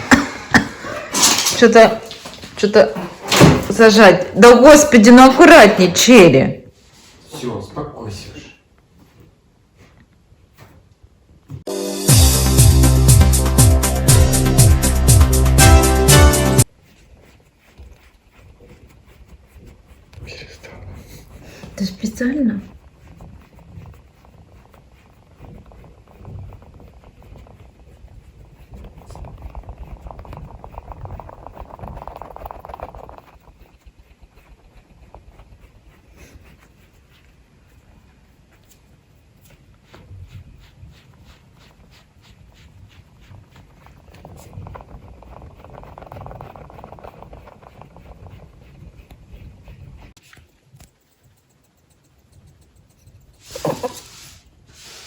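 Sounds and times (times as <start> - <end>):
rabbit rumbling chatter: 16.8 - 55.0.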